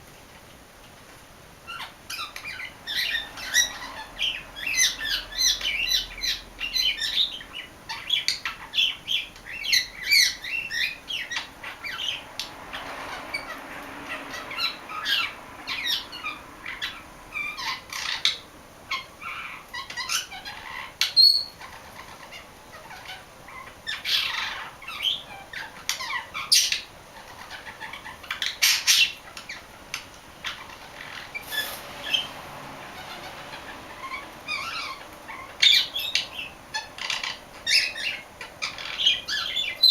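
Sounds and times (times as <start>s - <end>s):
budgerigar warbling: 1.7s - 12.2s, 32.9s - 39.9s.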